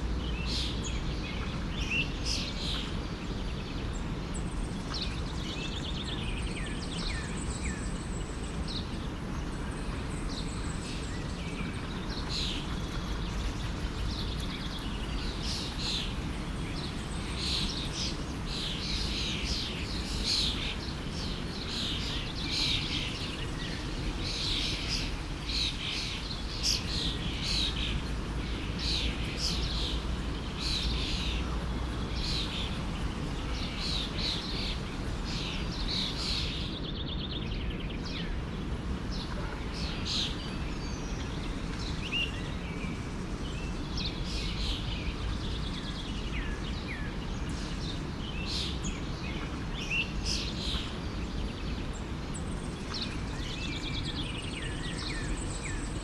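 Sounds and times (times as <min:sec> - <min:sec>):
birds chirping: 0:00.1 - 0:56.0
stream rushing: 0:10.3 - 0:36.7, 0:38.0 - 0:55.8.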